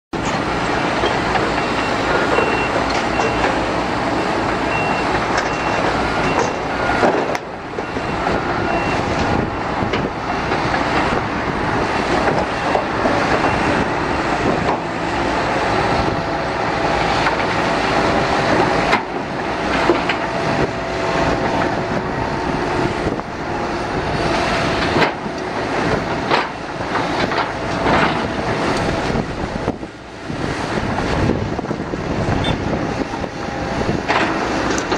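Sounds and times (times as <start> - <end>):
diesel construction machinery running: 0.1 - 34.9
reversing alarm beeping: 1.1 - 9.6, 12.6 - 13.9.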